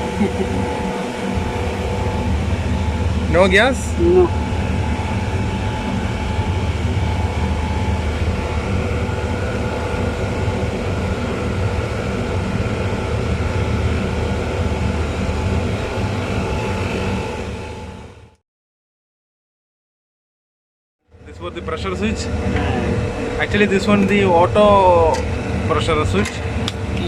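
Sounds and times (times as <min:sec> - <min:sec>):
machinery deep hum: 0:00.0 - 0:18.4, 0:21.1 - 0:27.0
machinery whining tones: 0:00.0 - 0:18.4, 0:21.2 - 0:27.0.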